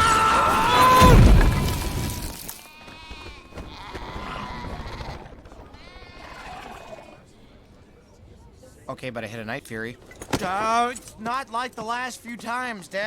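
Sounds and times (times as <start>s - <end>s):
loud crash with deep boom: 0.8s - 2.4s.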